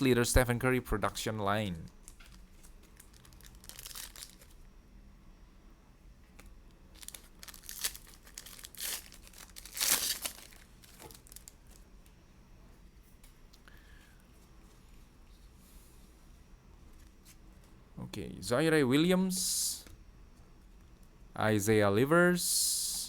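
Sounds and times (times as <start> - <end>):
card pack wrapper tearing and crinkling: 1.9 - 4.6, 6.9 - 11.8.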